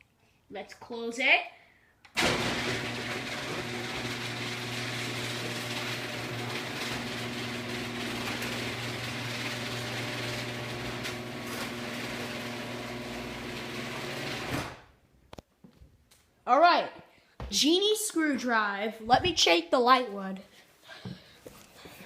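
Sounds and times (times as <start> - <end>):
garage door opener running: 2.1 - 14.9.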